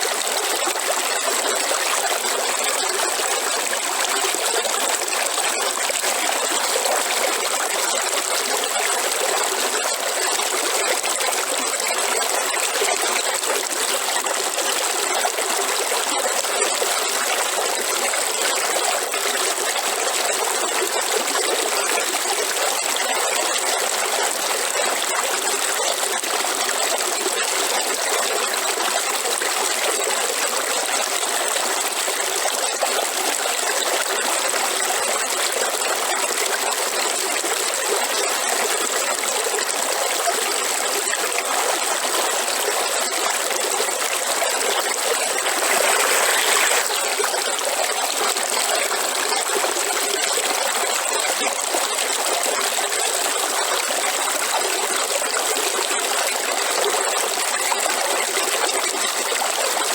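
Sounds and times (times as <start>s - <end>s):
river water flowing: 36.6s - 58.9s.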